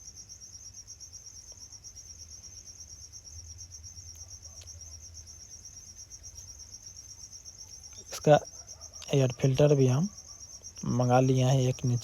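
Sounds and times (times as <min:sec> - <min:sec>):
cricket trilling: 0:00.0 - 0:12.0.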